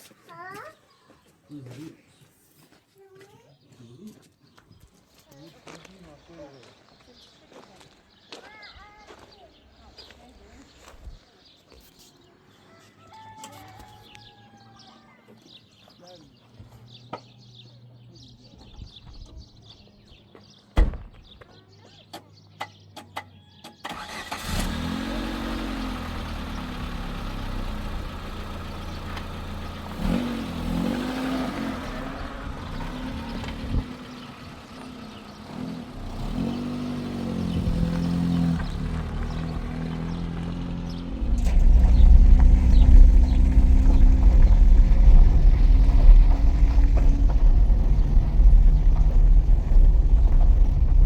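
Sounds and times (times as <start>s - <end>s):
engine starting and revving: 23.8s - 51.0s.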